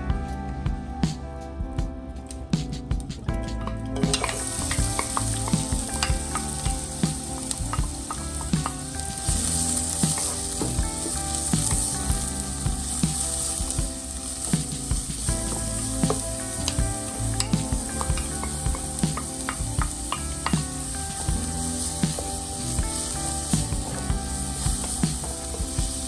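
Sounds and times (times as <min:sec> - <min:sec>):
food sizzling in hot oil: 0:04.0 - 0:26.0
utensil stirring in pan: 0:04.0 - 0:26.0.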